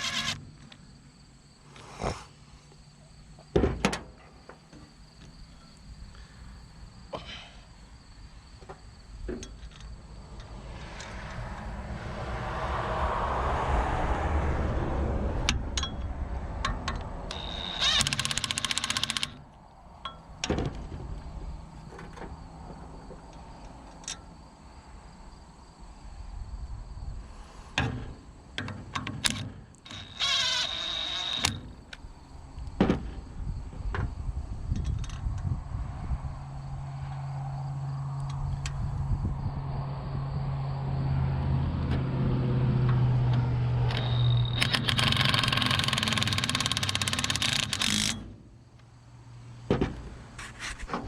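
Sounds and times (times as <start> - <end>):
small power tool whirring: 0.0 - 0.4, 17.3 - 19.4, 29.9 - 31.6, 43.9 - 48.3
metal knocks and clanks: 49.7 - 50.3.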